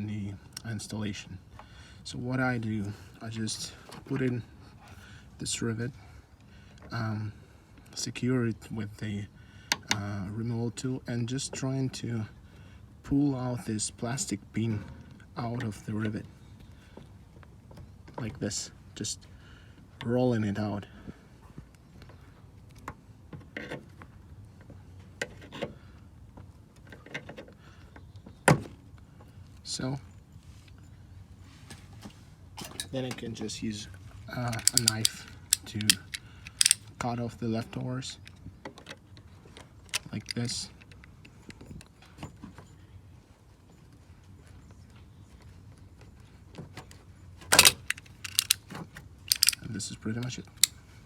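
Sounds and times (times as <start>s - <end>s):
plastic clicks and scrapes: 34.5s - 36.8s, 47.5s - 48.7s, 49.3s - 49.6s
hand tools tapping plastic: 34.6s - 36.8s
sharp loud plastic click: 34.6s - 36.8s, 47.5s - 48.6s, 49.3s - 49.6s.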